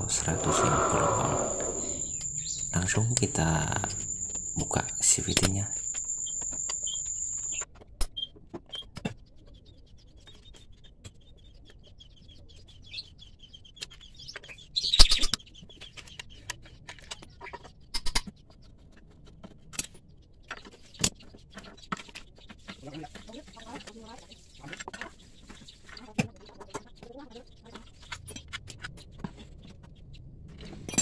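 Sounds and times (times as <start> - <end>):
high whine: 0.0 - 5.5
bird chirping: 0.0 - 7.6.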